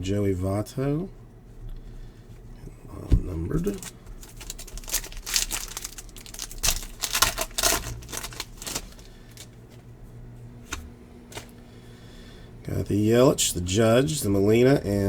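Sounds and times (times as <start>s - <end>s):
trading cards clicking and rustling: 3.6s - 9.9s, 10.6s - 11.6s.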